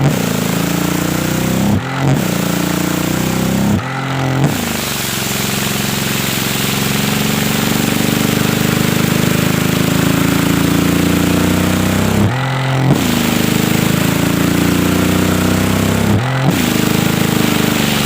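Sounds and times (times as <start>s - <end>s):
vacuum cleaner motor humming: 16.6s - 18.0s.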